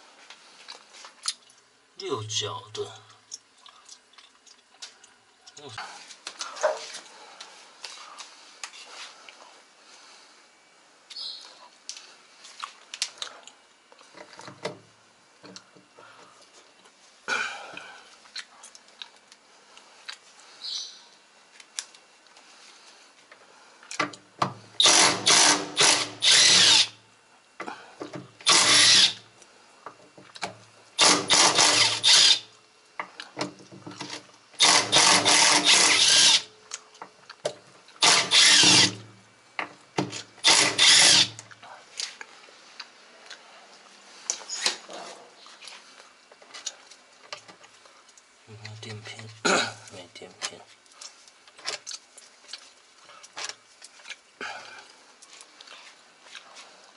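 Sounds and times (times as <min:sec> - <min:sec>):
power drill-driver bursts: 0:24.8 - 0:27.0, 0:28.4 - 0:29.2, 0:31.0 - 0:32.5, 0:34.6 - 0:36.5, 0:38.0 - 0:39.0, 0:40.4 - 0:41.4.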